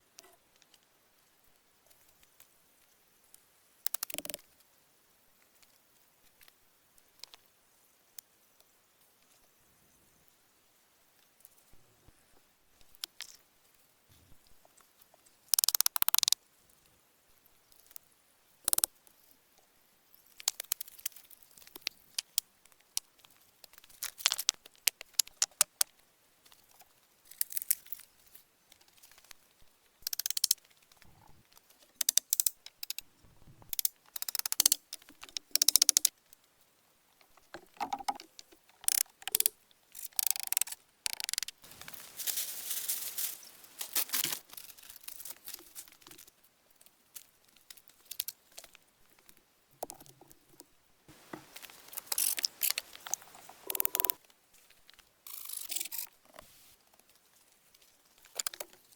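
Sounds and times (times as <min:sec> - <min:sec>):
sharp clicks and snaps: 0:03.9 - 0:04.4, 0:15.6 - 0:16.4, 0:18.7 - 0:18.9, 0:30.0 - 0:31.1, 0:32.0 - 0:36.1, 0:37.9 - 0:41.6, 0:51.6 - 0:54.2
rustling and crackling: 0:40.0 - 0:58.9.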